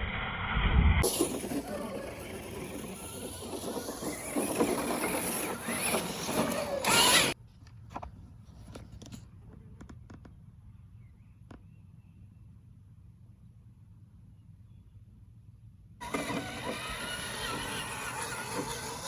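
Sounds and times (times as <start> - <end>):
toy car motor whirring: 1.0 - 7.4, 16.0 - 19.0.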